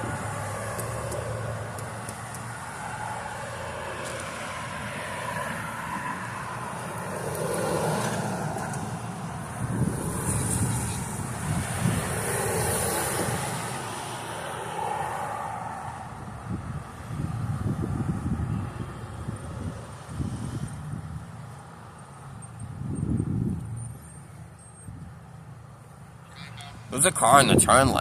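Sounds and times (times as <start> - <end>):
cars passing: 0.0 - 28.0
wind on microphone: 8.6 - 13.8, 16.0 - 21.4, 22.6 - 23.8, 27.3 - 28.0.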